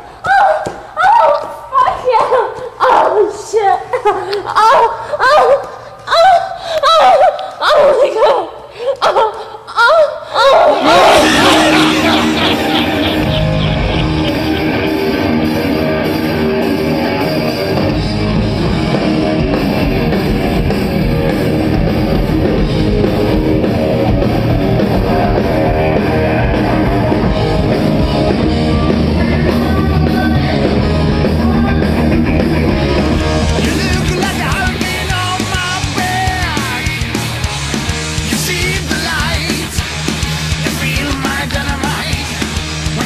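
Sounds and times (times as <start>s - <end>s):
electric guitar: 10.7s - 43.0s
bass guitar: 10.8s - 43.0s
drum kit: 10.8s - 43.0s.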